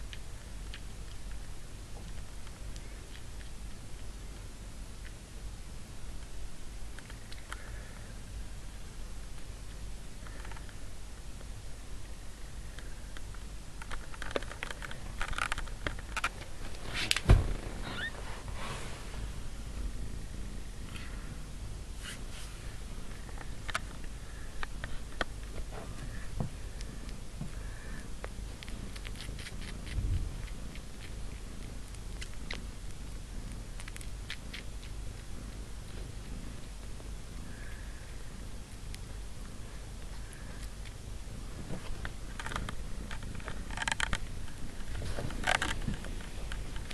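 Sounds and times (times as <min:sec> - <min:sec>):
kittens rustling in bedding: 0:16.4 - 0:19.7, 0:44.4 - 0:46.9
cat purring: 0:16.4 - 0:21.9, 0:22.6 - 0:46.9
loud thump: 0:17.2 - 0:17.7
faint rising squeak: 0:17.8 - 0:18.3.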